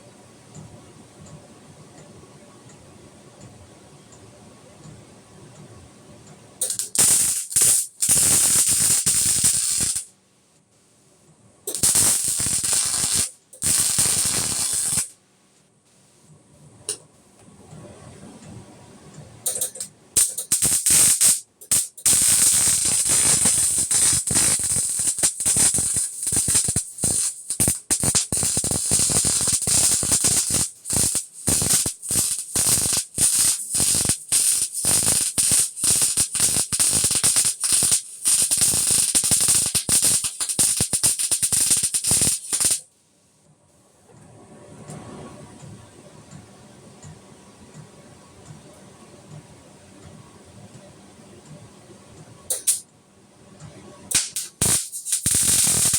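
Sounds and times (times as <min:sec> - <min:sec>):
electric arc welding crackle: 0:06.6 - 0:10.1, 0:11.7 - 0:15.2, 0:19.4 - 0:42.9, 0:52.5 - 0:52.8, 0:54.1 - 0:55.9.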